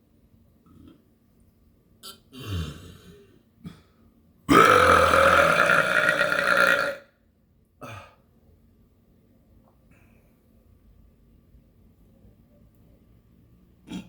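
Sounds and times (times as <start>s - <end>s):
person burping: 2.0s - 3.2s, 4.5s - 7.1s, 7.8s - 8.2s.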